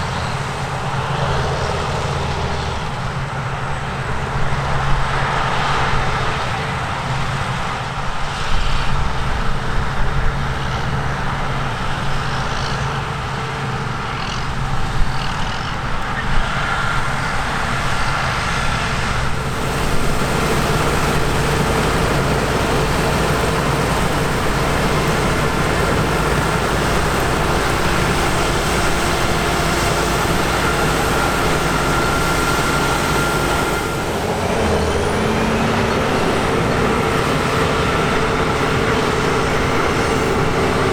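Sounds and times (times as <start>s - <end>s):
diesel engines running under load: 0.0s - 40.9s
thin steady whine: 19.1s - 40.9s.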